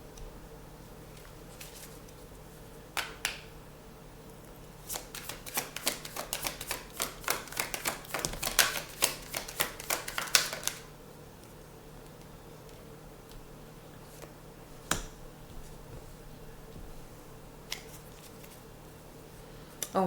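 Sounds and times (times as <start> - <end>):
cards shuffling papery clicks: 4.8 - 10.9
cards snapping: 4.9 - 10.9.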